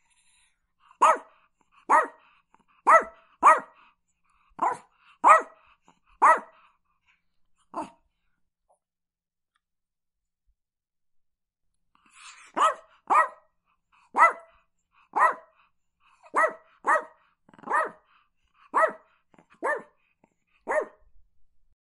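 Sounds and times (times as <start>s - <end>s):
small dog yapping: 2.9s - 3.7s, 12.3s - 13.4s, 14.2s - 14.4s, 16.3s - 18.0s, 18.8s - 19.0s, 20.7s - 20.9s.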